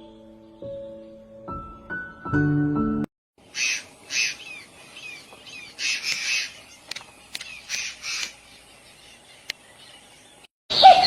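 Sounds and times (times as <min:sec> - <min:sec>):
music: 0:00.0 - 0:03.1
birds falling chirps: 0:03.4 - 0:11.0
birds harsh squawks: 0:03.4 - 0:11.0.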